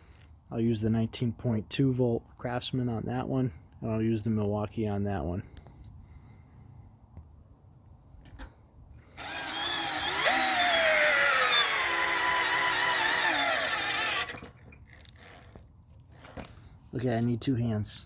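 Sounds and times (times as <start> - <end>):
cordless drill motor whining: 9.1 - 14.6.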